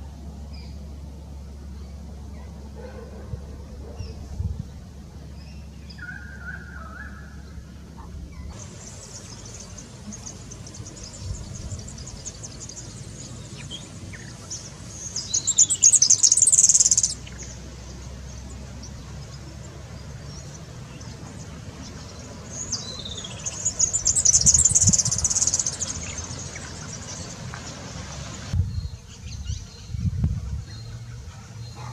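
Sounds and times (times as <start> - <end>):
bird high-pitched calls: 5.4 - 17.6, 20.5 - 30.0
steady high hiss: 7.5 - 29.3.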